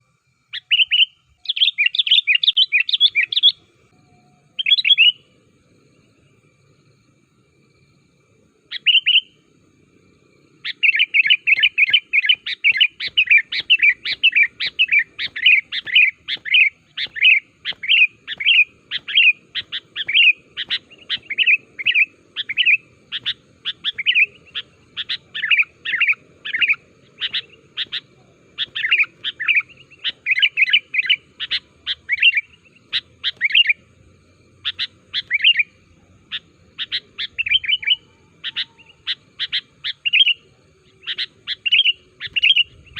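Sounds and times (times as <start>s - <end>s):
bulbul chirping rapidly: 10.6s - 33.8s.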